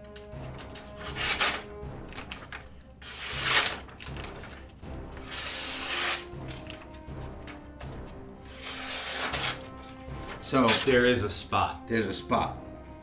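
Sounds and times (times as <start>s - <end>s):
faint background music: 0.0s - 13.0s
knife blade rasping strokes: 1.0s - 1.7s, 3.0s - 3.8s, 5.2s - 6.8s, 8.4s - 9.8s.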